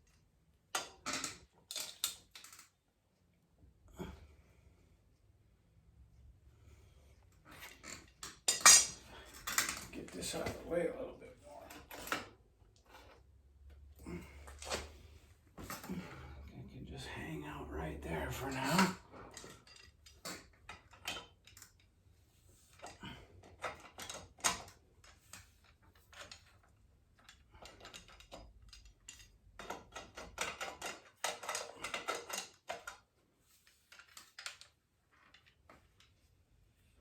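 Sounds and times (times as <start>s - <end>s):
bicycle parts and tools clicking: 0.7s - 2.8s, 22.7s - 33.1s.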